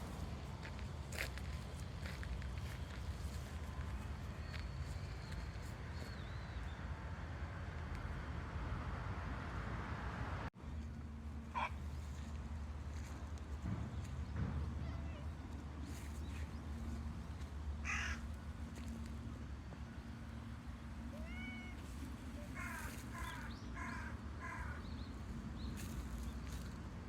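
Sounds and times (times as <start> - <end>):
cats meowing: 21.0 - 23.5.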